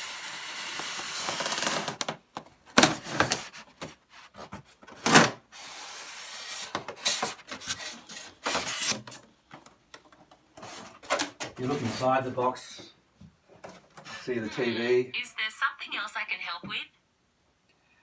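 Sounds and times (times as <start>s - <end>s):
sharp scrapes and knocks: 2.8s - 9.2s, 10.6s - 12.5s.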